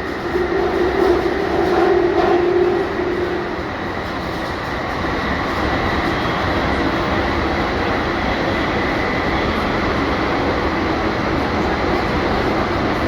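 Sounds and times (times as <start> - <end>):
train wheels on rails in tunnel: 0.0 - 13.0.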